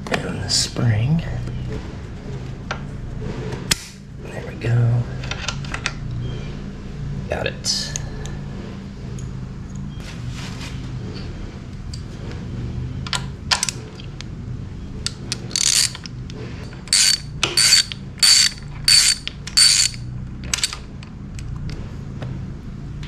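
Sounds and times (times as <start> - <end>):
ratchet wrench clicking: 15.0 - 16.2, 16.8 - 20.8.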